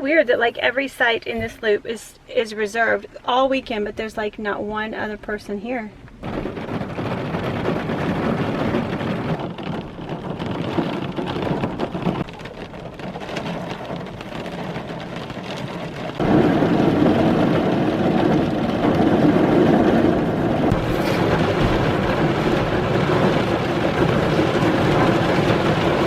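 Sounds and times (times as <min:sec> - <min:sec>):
heavy rain falling: 0:06.2 - 0:26.0.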